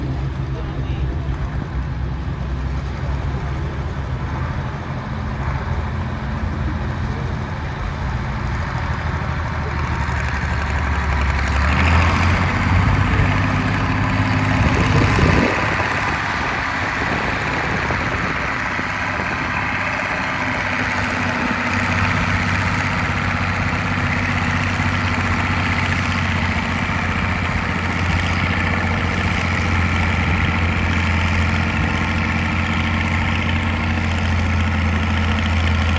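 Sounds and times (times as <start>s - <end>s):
tractor engine labouring: 0.0s - 35.9s.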